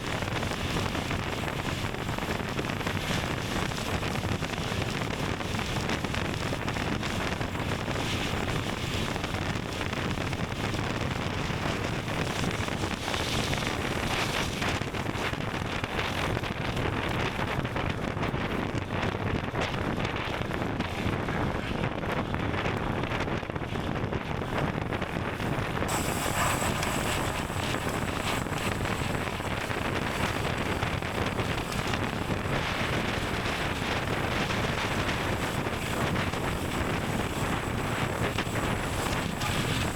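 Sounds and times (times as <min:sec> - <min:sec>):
bicycle tyre noise: 0:00.0 - 0:39.9
wind rushing over microphone: 0:00.0 - 0:39.9
high hiss with thin whine: 0:25.9 - 0:39.9.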